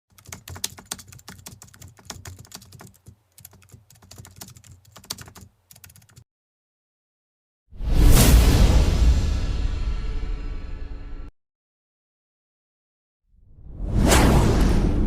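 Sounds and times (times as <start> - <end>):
rapid irregular clicking: 0.1 - 6.2.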